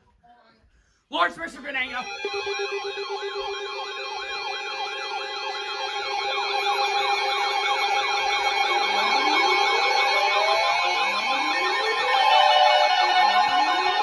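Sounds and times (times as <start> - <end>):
steady alert tones: 1.2 - 10.6
electronic siren yelping: 1.9 - 14.0
rising siren wail: 2.0 - 14.0.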